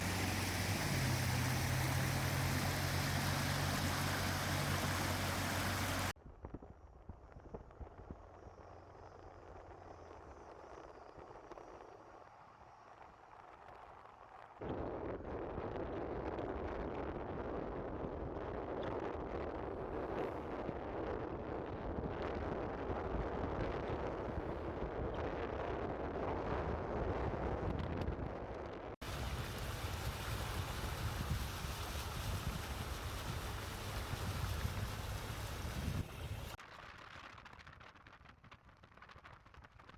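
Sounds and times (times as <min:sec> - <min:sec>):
floodwater rushing: 0:00.0 - 0:06.1, 0:29.0 - 0:36.6
low steady hum: 0:00.0 - 0:06.1
wind buffeting microphone: 0:00.0 - 0:06.2, 0:14.6 - 0:36.6.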